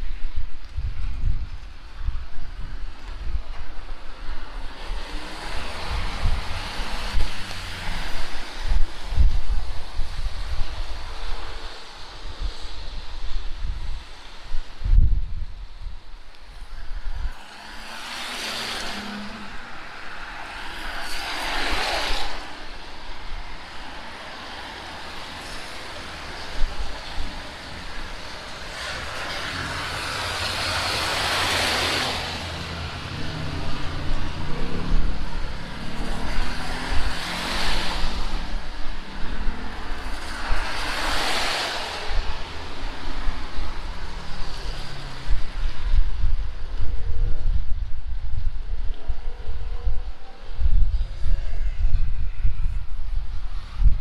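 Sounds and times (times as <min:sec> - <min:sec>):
wind rumble on microphone: 0:00.0 - 0:54.0
tyre hiss on wet asphalt: 0:17.4 - 0:34.4.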